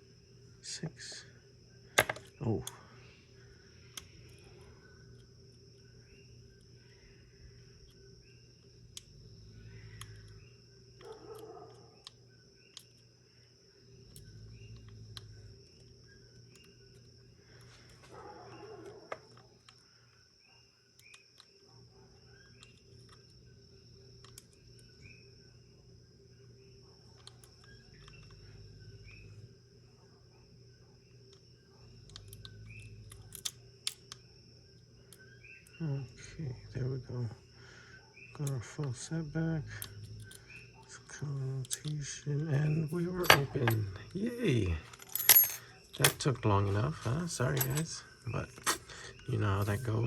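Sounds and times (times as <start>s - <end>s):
faint steady hum: 0.0s - 50.0s
lock pick ticking and clicking: 21.0s - 21.5s, 32.0s - 34.3s, 41.6s - 44.1s.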